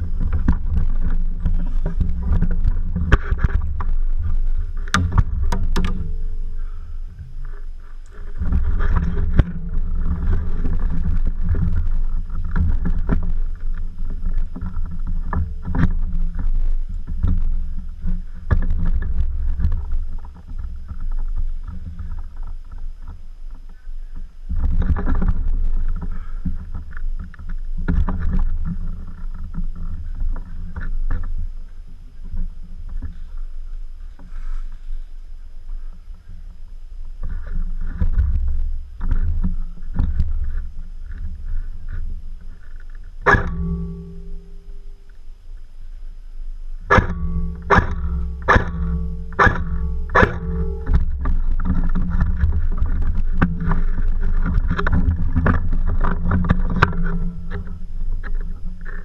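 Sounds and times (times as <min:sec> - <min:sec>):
rubbing on camera microphone: 0:00.0 - 0:36.5.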